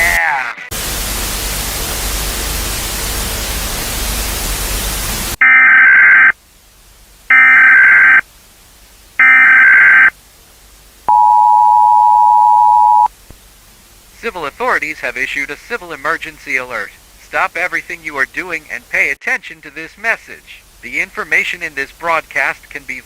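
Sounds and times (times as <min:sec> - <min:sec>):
loud static hiss: 0:00.0 - 0:23.0
alert header data tones: 0:05.4 - 0:06.3, 0:07.3 - 0:08.2, 0:09.2 - 0:10.1, 0:11.1 - 0:13.1
two-tone attention signal: 0:05.4 - 0:06.3, 0:07.3 - 0:08.2, 0:09.2 - 0:10.1, 0:11.1 - 0:13.1.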